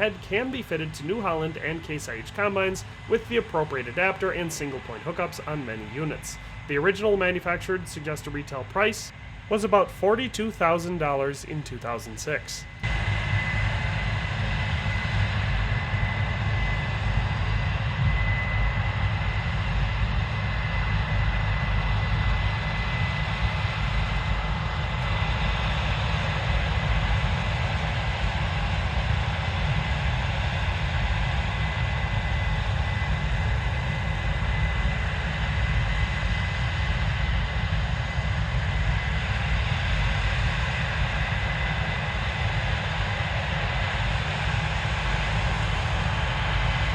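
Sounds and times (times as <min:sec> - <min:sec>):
high steady whine: 0:00.0 - 0:27.6
combine harvester drone: 0:00.0 - 0:46.9.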